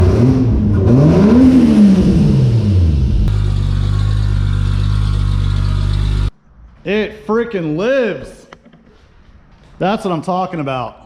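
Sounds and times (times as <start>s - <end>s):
car engine revving and idling: 0.0s - 6.3s.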